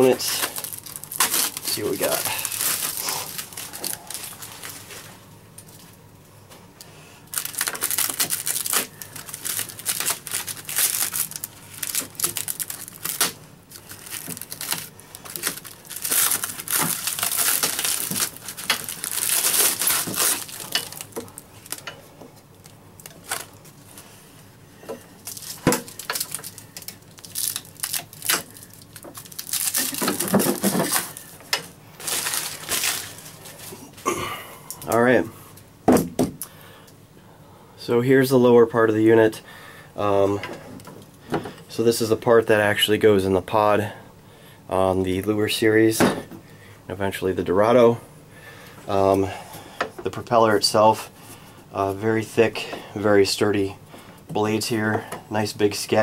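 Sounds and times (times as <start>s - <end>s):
packaging crinkling and tearing: 0.0s - 5.9s, 7.3s - 21.9s, 22.6s - 23.8s, 25.2s - 31.4s, 32.0s - 33.8s.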